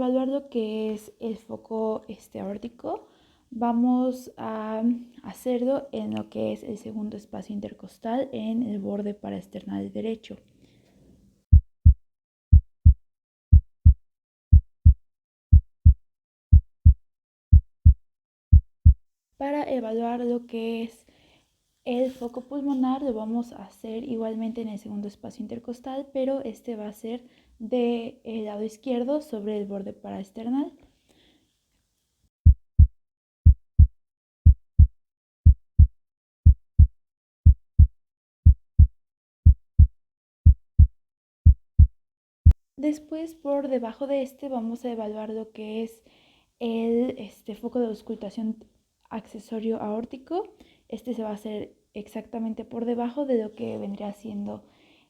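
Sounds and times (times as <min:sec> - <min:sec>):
heartbeat through stethoscope: 0:11.5 - 0:19.0, 0:32.4 - 0:42.6.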